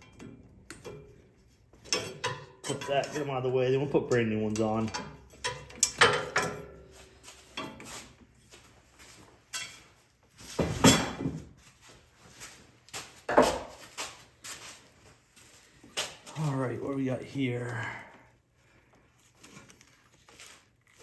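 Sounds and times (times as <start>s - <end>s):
metal clinks and knocks of tools: 1.8s - 3.3s, 4.8s - 7.9s.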